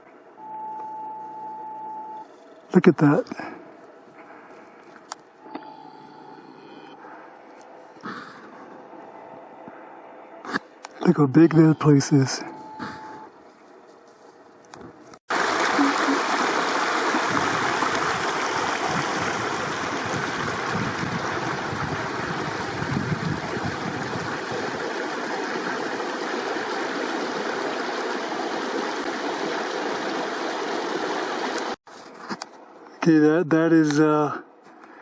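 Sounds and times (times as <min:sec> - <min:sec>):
river water rushing: 0:15.3 - 0:31.8.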